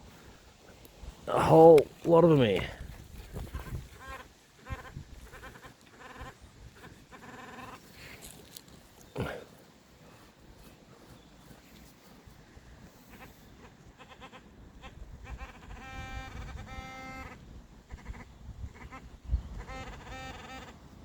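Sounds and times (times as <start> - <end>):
metal detector beeps: 15.8 - 17.4.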